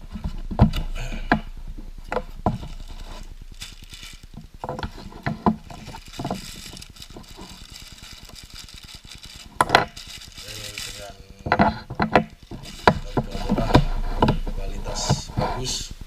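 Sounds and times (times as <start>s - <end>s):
fishing reel and packaging handled: 2.6s - 11.2s, 11.8s - 13.8s.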